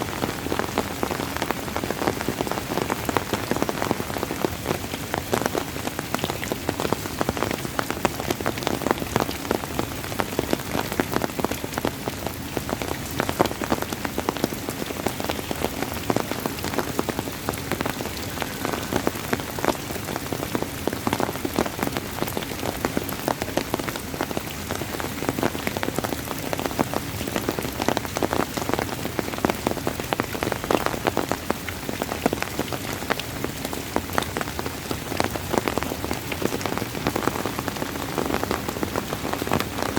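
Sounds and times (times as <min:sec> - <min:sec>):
rain pattering on hard surface: 0:00.0 - 0:39.9.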